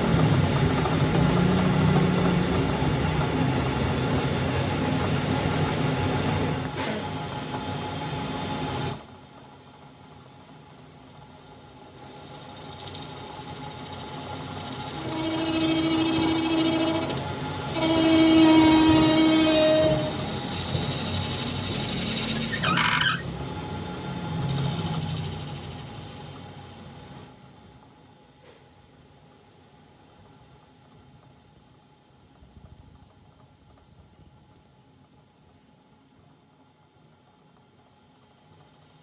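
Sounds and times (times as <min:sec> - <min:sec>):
high-pitched squeal: 0:14.6 - 0:23.3.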